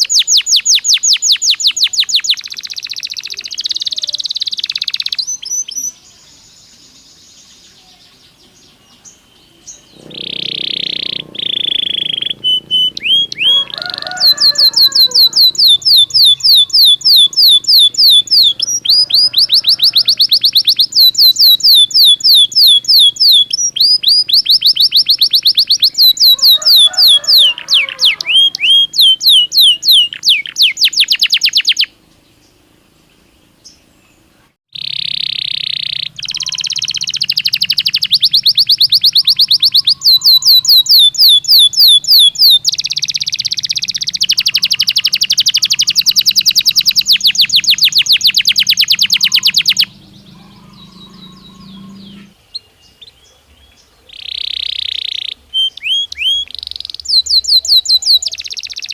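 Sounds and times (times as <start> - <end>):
canary singing and trilling: 0.0 - 32.0, 34.7 - 58.9.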